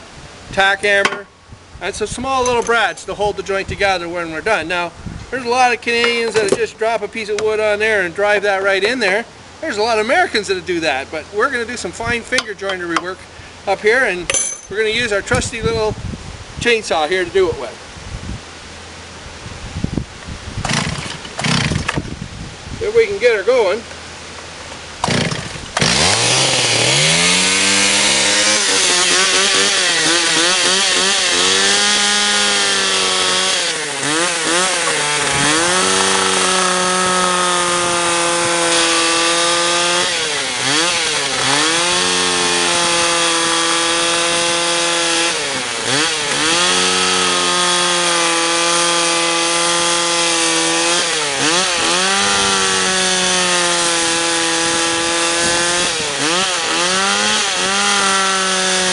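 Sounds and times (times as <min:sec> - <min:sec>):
chainsaw revving and cutting wood: 0:20.6 - 0:22.1, 0:25.0 - 0:58.9.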